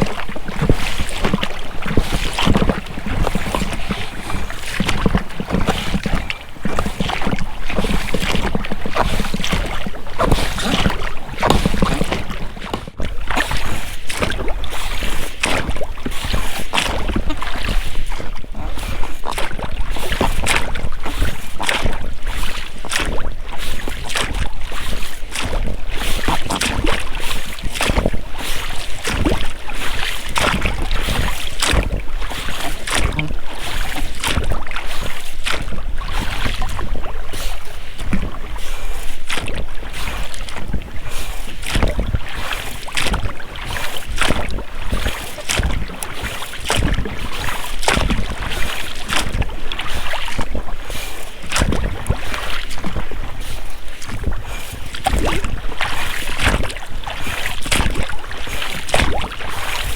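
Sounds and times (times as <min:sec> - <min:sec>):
rubber rowlocks creaking: 0:00.0 - 0:12.9
wind on microphone: 0:00.0 - 0:22.3, 0:23.2 - 0:59.9
oars splashing in water: 0:00.0 - 0:59.9.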